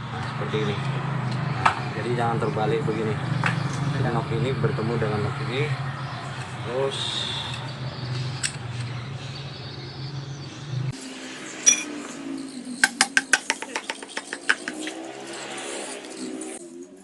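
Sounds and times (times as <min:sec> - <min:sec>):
metal tools clinking: 0:11.6 - 0:11.9.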